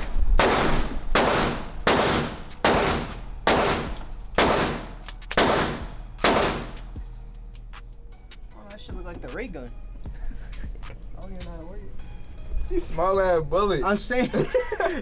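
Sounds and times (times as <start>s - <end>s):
echoing handgun shots: 0.0s - 7.0s.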